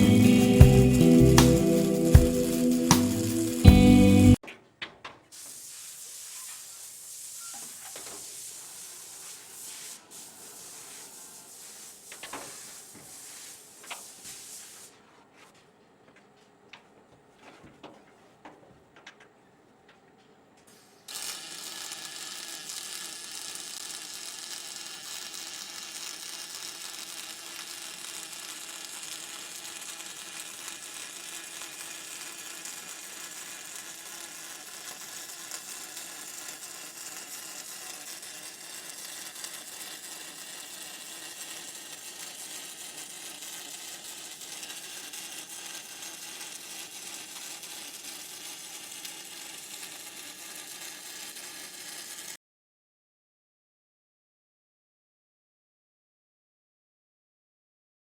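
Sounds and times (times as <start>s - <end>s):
welder hissing: 0.0s - 4.4s, 5.3s - 14.9s, 21.1s - 52.4s.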